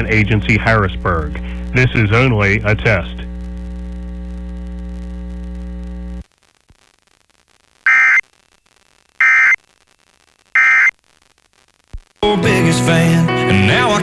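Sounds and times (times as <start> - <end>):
broadcast voice message: 0.0 - 3.3
steady electrical hum: 0.0 - 8.5
warbling data tone bursts: 7.9 - 8.2, 9.2 - 9.6, 10.6 - 11.0.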